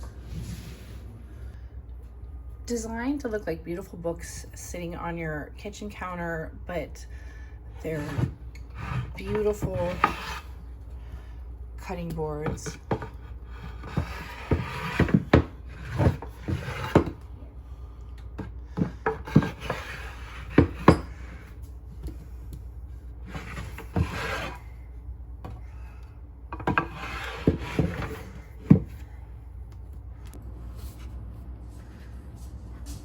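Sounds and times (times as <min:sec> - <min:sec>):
blade rasping across wood: 0:07.8 - 0:10.6, 0:12.6 - 0:17.2, 0:18.8 - 0:21.0, 0:23.3 - 0:24.6, 0:26.7 - 0:28.3
knife chopping on wooden board: 0:18.7 - 0:21.1.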